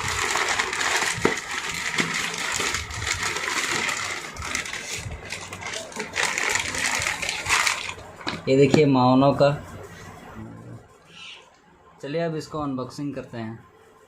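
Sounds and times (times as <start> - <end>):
packaging crinkling and rustling: 0.0 - 8.5.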